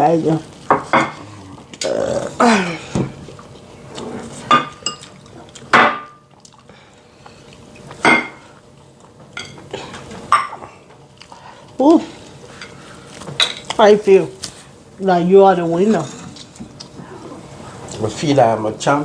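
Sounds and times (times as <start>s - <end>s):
plates and cutlery clinking: 0.7s - 1.2s, 4.4s - 6.2s, 7.9s - 8.6s, 9.3s - 10.7s.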